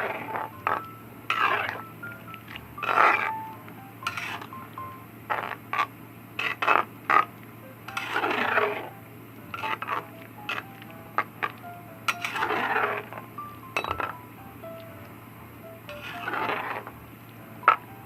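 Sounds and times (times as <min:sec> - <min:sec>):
utensil scraping a cooking pot: 0:04.1 - 0:04.5, 0:05.3 - 0:07.3, 0:07.9 - 0:08.9, 0:09.5 - 0:10.6, 0:12.1 - 0:13.2, 0:15.9 - 0:17.0.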